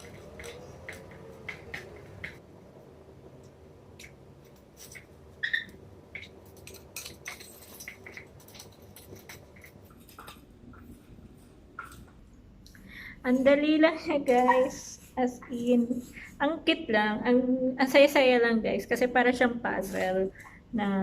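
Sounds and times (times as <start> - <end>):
metal tubes clicking and tapping: 0.0 - 2.4, 3.4 - 10.9.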